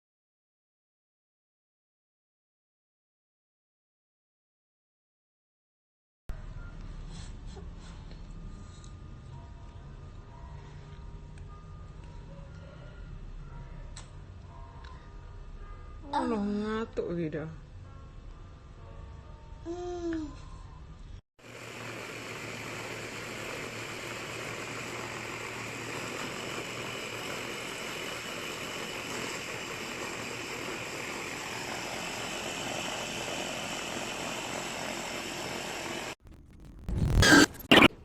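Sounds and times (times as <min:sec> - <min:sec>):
meat grinder motor running: 0:21.5 - 0:36.2.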